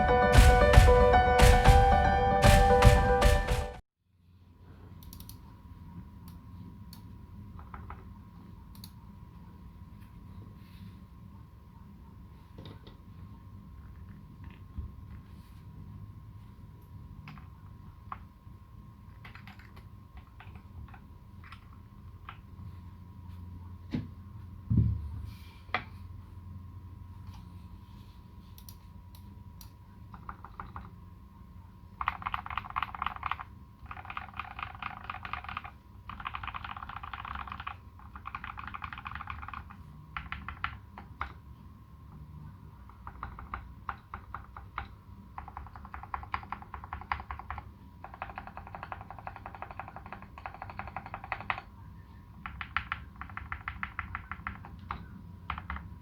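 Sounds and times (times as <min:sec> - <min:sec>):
loud low thump: 0:00.0 - 0:03.8
mechanical keyboard typing: 0:07.6 - 0:08.1, 0:19.2 - 0:22.5, 0:30.1 - 0:30.9, 0:32.0 - 0:41.4, 0:42.9 - 0:51.7, 0:52.4 - 0:56.0.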